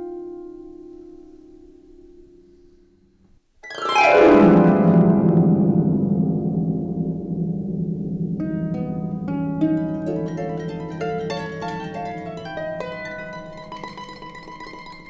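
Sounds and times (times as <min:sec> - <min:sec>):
quick plucked notes: 0:03.6 - 0:15.0
low held note: 0:04.7 - 0:15.0.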